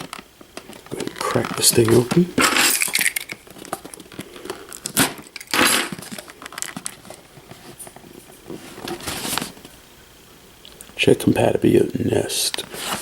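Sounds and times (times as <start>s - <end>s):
packaging tearing: 0.0s - 7.3s
cardboard and plastic crinkling: 0.0s - 9.8s, 12.6s - 13.0s.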